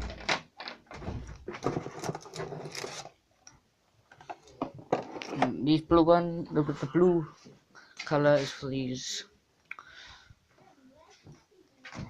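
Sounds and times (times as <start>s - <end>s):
packaging scraping and rustling: 1.4s - 3.2s.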